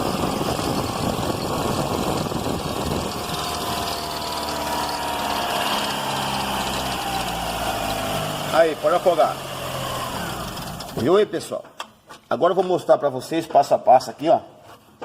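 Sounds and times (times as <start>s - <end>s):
thin high falling tone: 0.2s - 8.5s
car engine idling: 0.5s - 11.0s.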